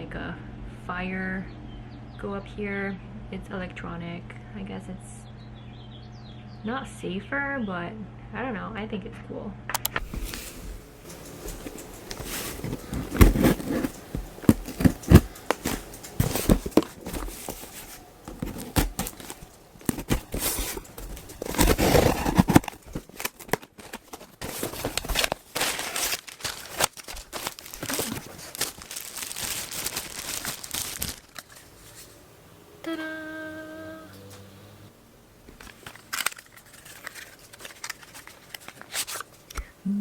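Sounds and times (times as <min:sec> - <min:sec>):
packaging crinkling and tearing: 0:10.0 - 0:32.0, 0:35.5 - 0:39.7.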